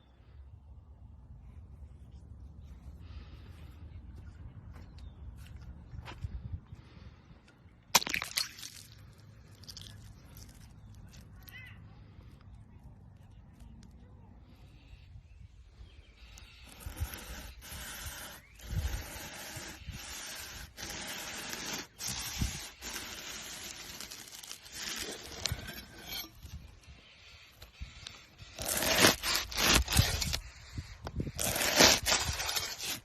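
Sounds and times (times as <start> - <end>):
scraping strokes: 16.3 - 33.0.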